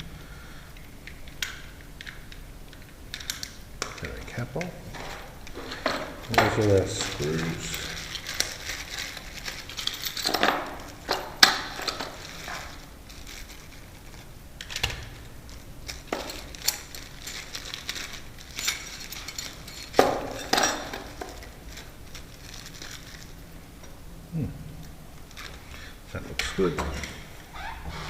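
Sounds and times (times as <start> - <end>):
metal parts clinking and rattling: 3.1 - 23.5.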